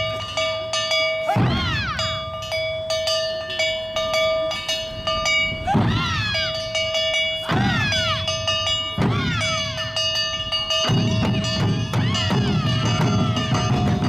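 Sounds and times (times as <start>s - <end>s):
hand gong clanging: 0.0s - 14.0s.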